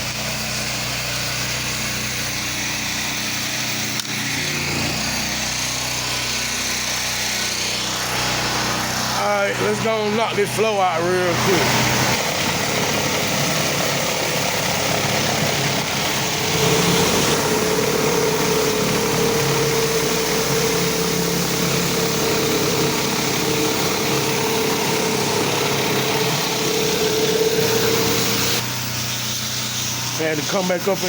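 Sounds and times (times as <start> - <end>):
high-pressure water spray hissing: 0.0 - 10.2, 11.0 - 31.0
pressure washer engine running: 0.0 - 31.0
steady whine: 6.8 - 29.1.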